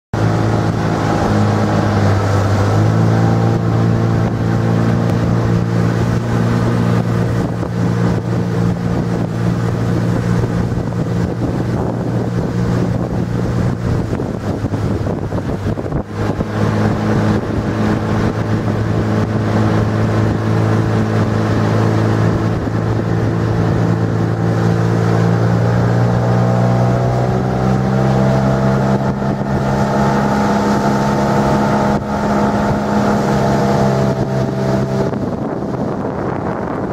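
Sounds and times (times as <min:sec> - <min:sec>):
outboard motor running: 0:00.1 - 0:36.9
wind on microphone: 0:00.2 - 0:36.9.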